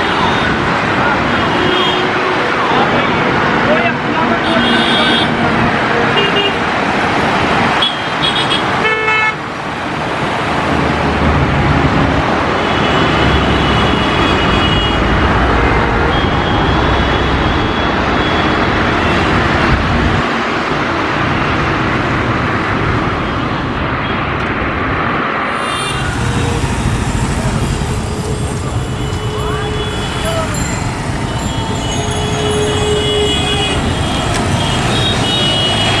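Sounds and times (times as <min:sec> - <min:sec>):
road traffic noise: 0:00.0 - 0:36.0
car horns honking: 0:25.4 - 0:36.0.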